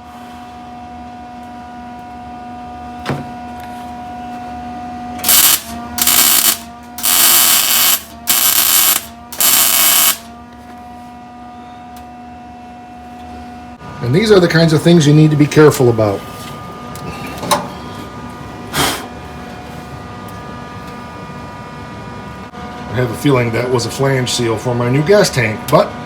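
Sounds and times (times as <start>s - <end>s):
steady electrical hum: 0.0s - 26.0s
welder bursts: 5.2s - 10.3s.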